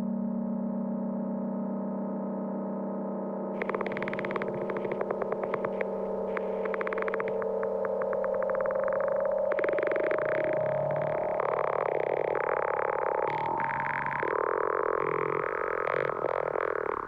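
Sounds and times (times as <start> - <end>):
electronic buzzing and warbling tones: 3.6 - 17.0.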